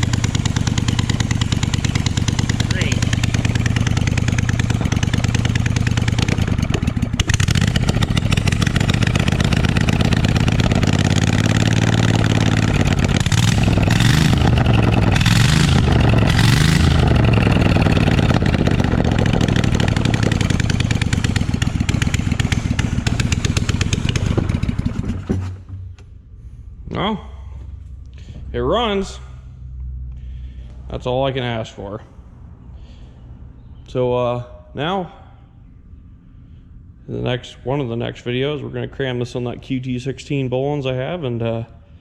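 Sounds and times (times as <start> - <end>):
small engine running and revving: 0.0 - 25.3.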